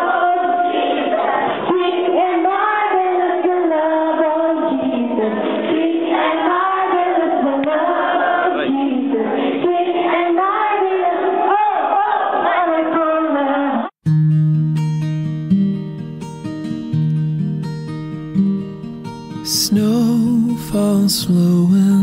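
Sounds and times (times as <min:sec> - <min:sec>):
group singing with children: 0:00.0 - 0:13.9.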